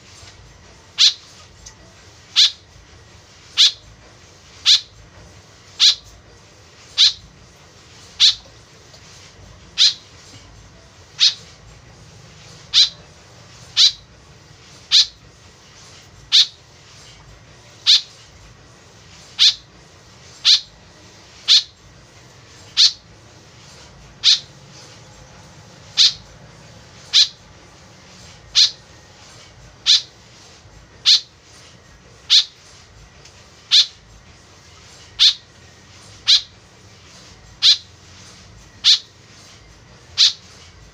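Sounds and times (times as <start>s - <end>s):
short sharp high bird calls: 12.7s - 13.0s, 13.8s - 14.0s, 20.4s - 20.7s, 24.2s - 24.5s, 25.9s - 26.2s, 27.1s - 27.4s, 28.5s - 28.8s, 29.8s - 30.1s, 37.6s - 37.8s.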